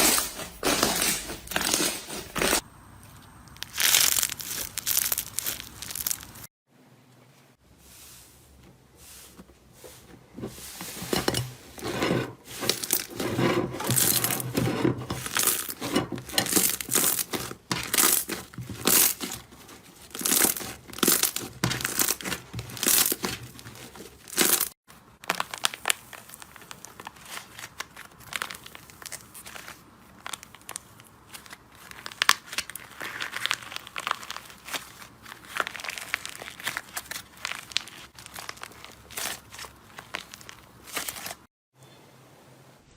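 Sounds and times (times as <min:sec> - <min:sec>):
slime crackling and popping: 0:03.6 - 0:06.5, 0:20.0 - 0:41.4.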